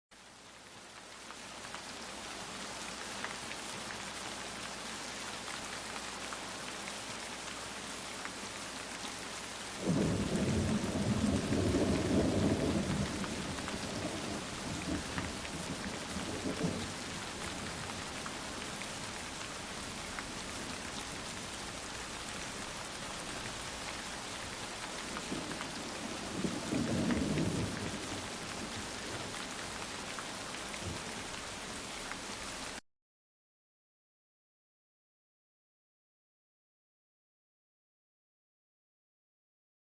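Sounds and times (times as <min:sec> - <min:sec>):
rain pattering: 0:00.2 - 0:32.8
thunder rumbling: 0:09.8 - 0:17.9.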